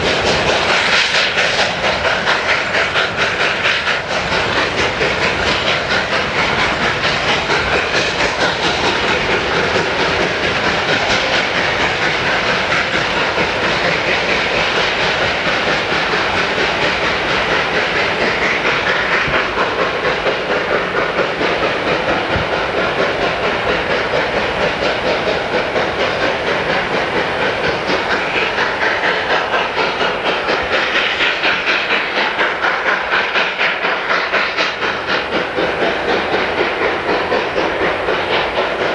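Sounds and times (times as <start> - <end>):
steam train rhythmic clatter: 0.0 - 38.9.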